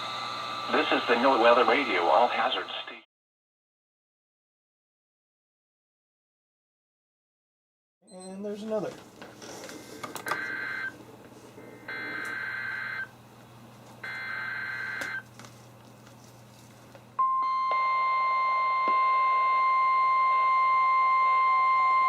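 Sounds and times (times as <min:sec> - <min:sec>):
steady warning alarm tone: 0:10.3 - 0:11.0, 0:11.6 - 0:13.2, 0:14.0 - 0:15.2, 0:17.2 - 0:22.0.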